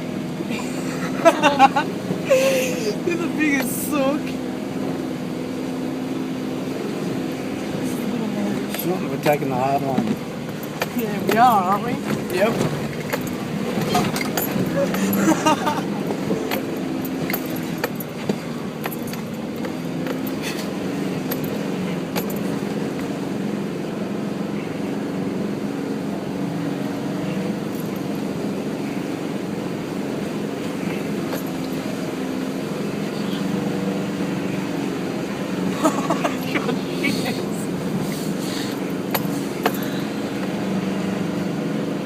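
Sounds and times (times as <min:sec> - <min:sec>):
engine running at low revs: 0:00.0 - 0:42.0
knocks and rattles: 0:10.0 - 0:20.5.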